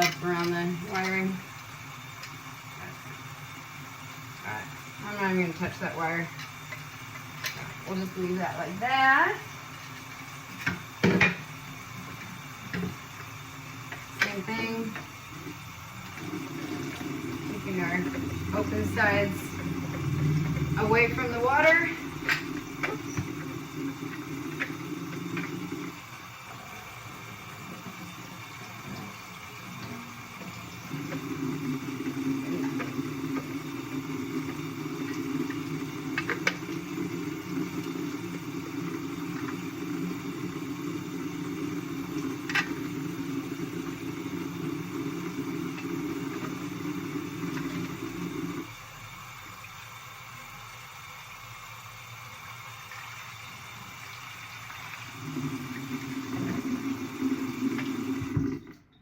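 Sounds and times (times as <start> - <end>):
faucet water running: 0.0 - 59.0.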